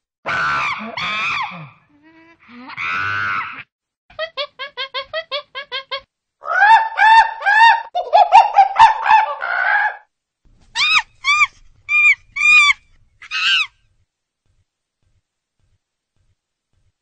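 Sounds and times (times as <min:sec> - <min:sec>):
bird calling loudly: 0:10.8 - 0:13.8.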